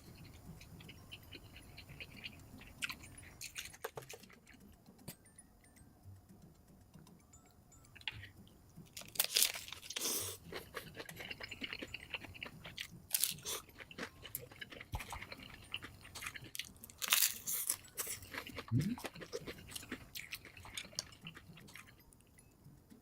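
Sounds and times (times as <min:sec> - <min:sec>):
crunchy chewing and biting: 0:08.9 - 0:22.1.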